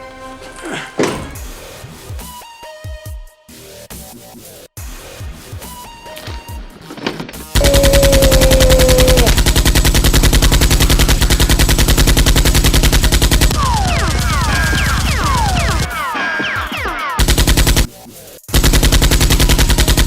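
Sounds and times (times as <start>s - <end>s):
machine-gun fire: 7.6s - 15.8s, 17.2s - 17.9s, 18.5s - 20.0s.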